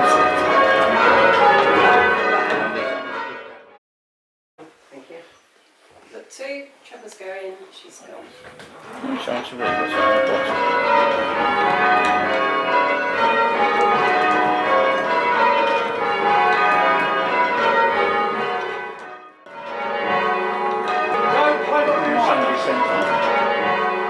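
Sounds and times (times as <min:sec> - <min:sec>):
church bells pealing: 0:00.0 - 0:03.8, 0:08.8 - 0:24.0.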